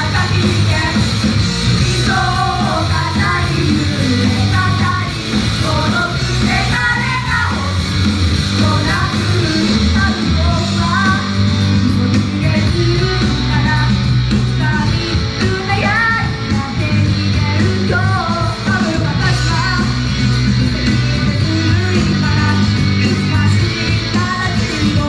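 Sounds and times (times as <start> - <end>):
loud rock band music: 0.0 - 25.0
group singing: 1.8 - 10.6.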